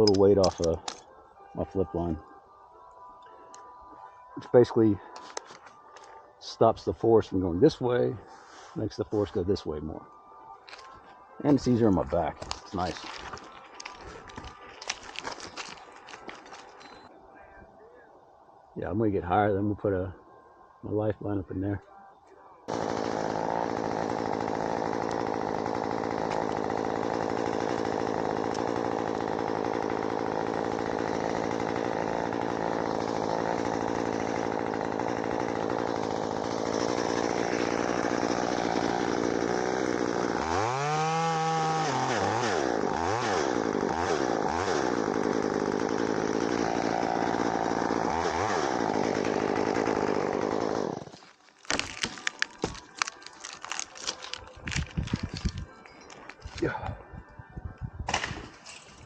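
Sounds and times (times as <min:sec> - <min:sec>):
rustling: 0:12.4 - 0:17.1, 0:51.1 - 0:56.6
chainsaw engine running: 0:22.7 - 0:55.6.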